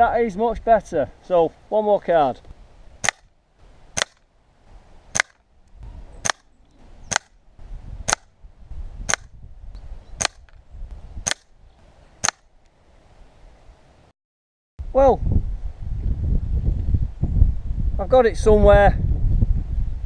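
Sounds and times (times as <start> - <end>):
air rifle shots: 3.0 - 3.3, 4.0 - 4.2, 5.1 - 5.4, 6.2 - 6.5, 7.1 - 7.4, 8.0 - 8.3, 9.0 - 9.4, 10.2 - 10.6, 11.2 - 11.5, 12.2 - 12.5.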